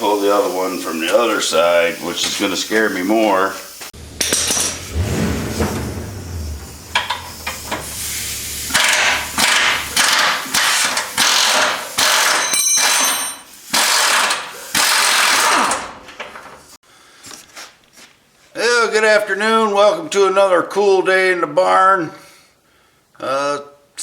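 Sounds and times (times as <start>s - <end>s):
impact wrench rattling bursts: 4.1s - 15.8s.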